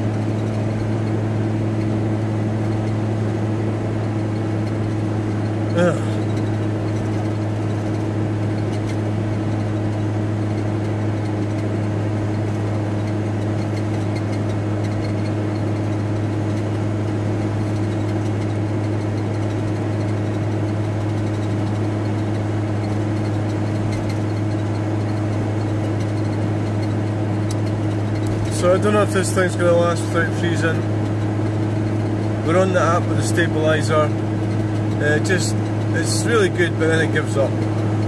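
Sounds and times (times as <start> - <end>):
road noise: 0.0 - 38.0
van engine drone: 0.0 - 38.0.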